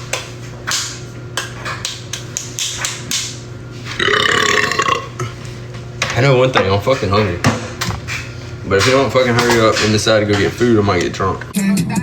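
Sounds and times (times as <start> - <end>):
man belching: 4.0 - 5.4.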